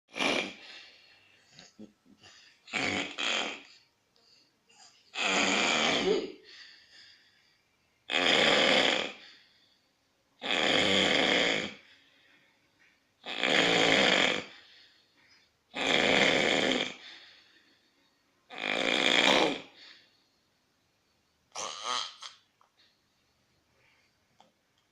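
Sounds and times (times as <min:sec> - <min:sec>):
loud rasping snoring: 0:00.1 - 0:00.8, 0:02.7 - 0:03.8, 0:05.1 - 0:06.4, 0:08.1 - 0:09.3, 0:10.4 - 0:11.8, 0:13.2 - 0:14.6, 0:15.8 - 0:17.2, 0:18.5 - 0:19.8, 0:21.6 - 0:22.4.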